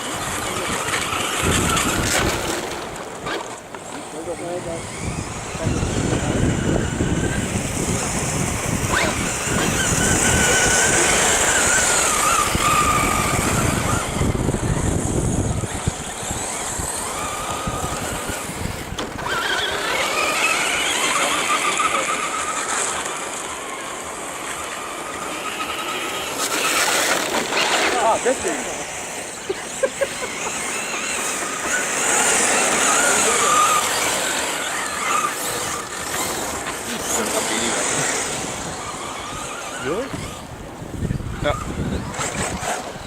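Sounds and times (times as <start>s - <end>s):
electric motor whining: 0.0s - 43.0s
steady rushing noise: 0.0s - 43.0s.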